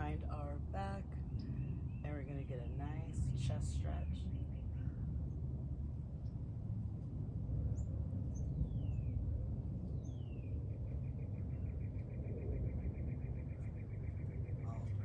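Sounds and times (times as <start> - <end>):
birds chirping: 0.0 - 5.2, 9.8 - 15.0
steady low rumble: 0.0 - 15.0.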